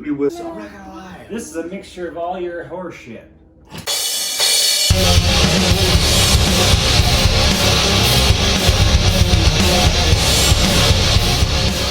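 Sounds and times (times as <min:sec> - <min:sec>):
heavy metal music: 0:03.8 - 0:11.9.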